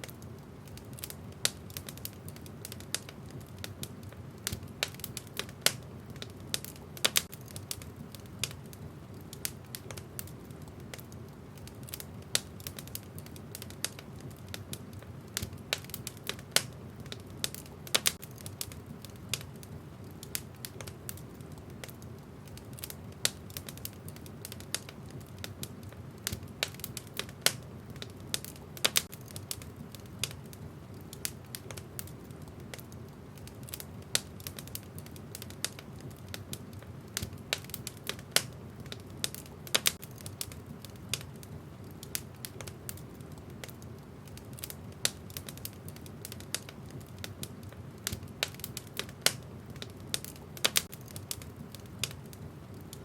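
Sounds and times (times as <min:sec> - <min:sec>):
logs crackling and popping: 0:00.0 - 0:53.0
low fire rumble: 0:00.0 - 0:53.0.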